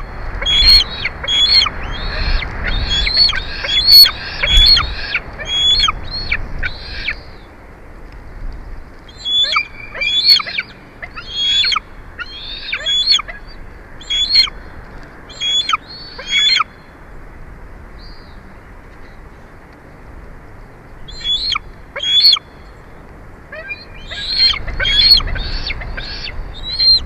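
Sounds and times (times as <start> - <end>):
eagle calling: 0.0 - 7.4, 9.1 - 14.6, 15.3 - 16.9, 21.0 - 22.9, 23.5 - 27.0.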